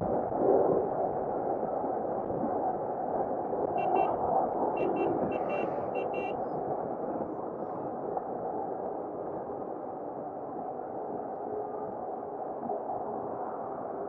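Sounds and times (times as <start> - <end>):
wind and road noise: 0.0 - 14.0
electronic double beeps: 3.8 - 4.2, 4.8 - 6.4.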